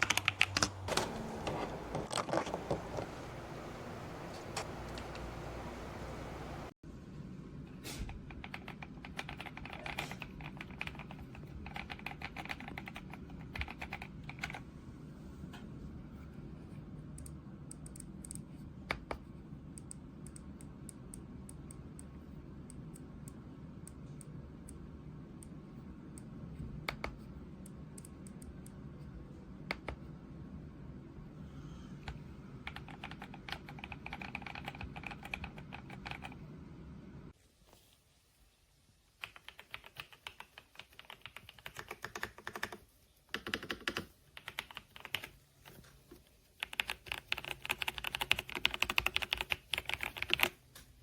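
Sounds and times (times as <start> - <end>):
mechanical keyboard typing: 0.0 - 3.0, 8.3 - 14.6, 32.6 - 36.4, 39.2 - 45.4, 46.6 - 50.6.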